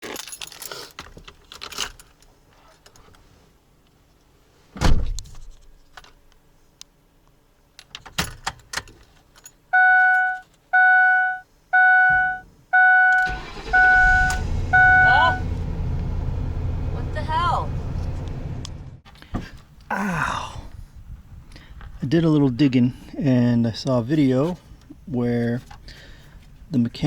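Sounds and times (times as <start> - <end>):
keys jangling: 0.0 - 2.3
dashboard warning chime: 9.7 - 15.6.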